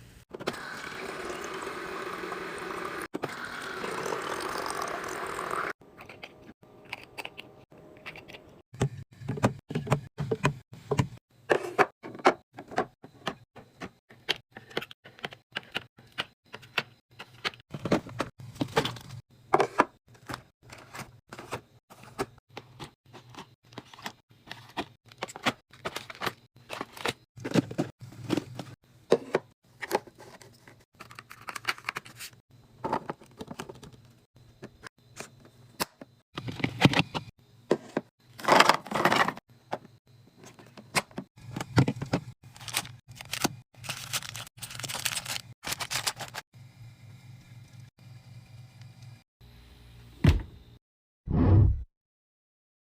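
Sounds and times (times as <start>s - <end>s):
items clicking and knocking: 5.9s - 32.2s, 32.8s - 46.4s
packaging crinkling and tearing: 42.4s - 46.4s.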